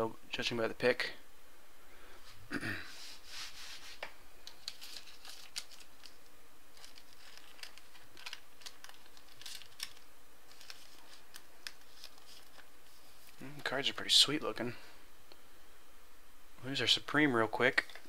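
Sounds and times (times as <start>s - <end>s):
trading cards rustling and clicking: 4.4s - 13.4s.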